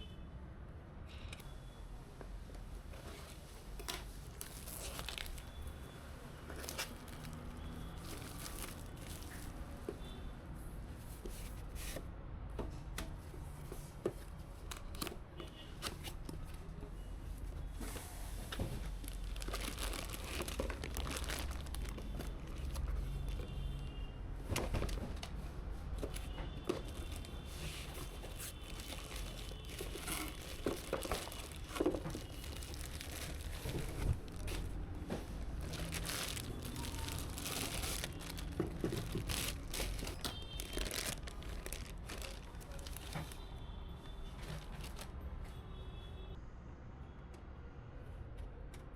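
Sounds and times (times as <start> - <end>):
packaging crinkling and rustling: 3.8 - 5.8, 6.4 - 9.8, 18.5 - 23.7, 24.5 - 25.4, 26.0 - 43.5, 44.4 - 45.2.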